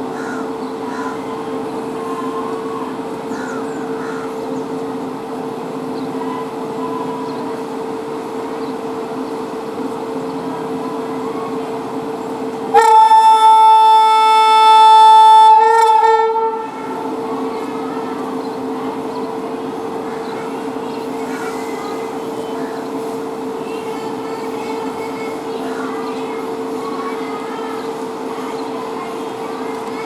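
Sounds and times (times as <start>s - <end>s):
train hum: 0.0s - 30.0s
locomotive horn blast: 12.7s - 16.8s.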